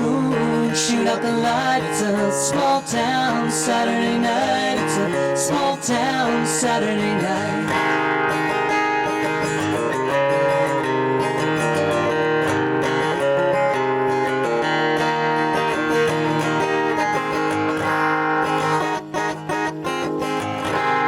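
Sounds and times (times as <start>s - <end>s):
strummed acoustic guitar: 0.0s - 21.0s.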